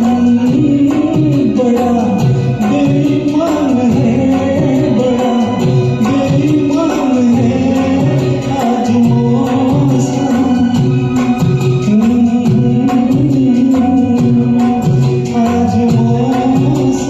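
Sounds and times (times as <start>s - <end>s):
karaoke backing track: 0.0s - 17.0s
man singing: 0.0s - 17.0s.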